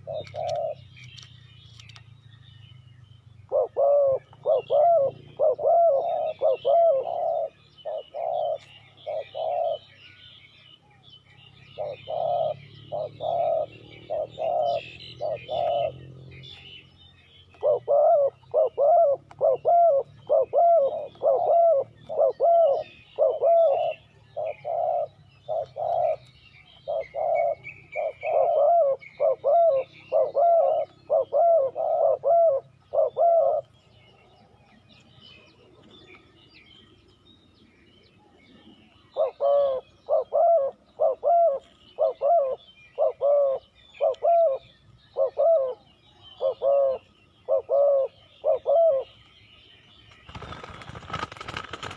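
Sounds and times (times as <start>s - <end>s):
dove cooing: 0.0s - 1.2s, 3.4s - 10.0s, 11.7s - 16.8s, 17.5s - 34.4s, 38.1s - 49.2s
small birds chirping faintly: 0.0s - 51.9s.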